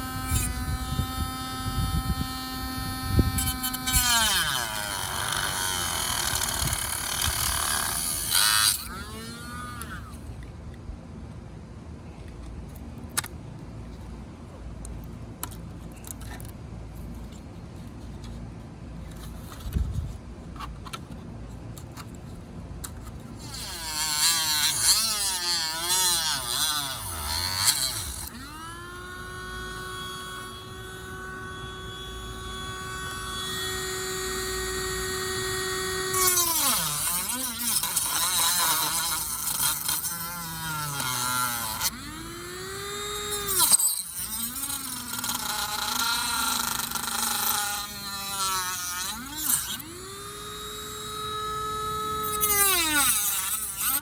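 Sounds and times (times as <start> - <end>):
rotary tool whining: 0.0 - 10.8, 14.8 - 54.0.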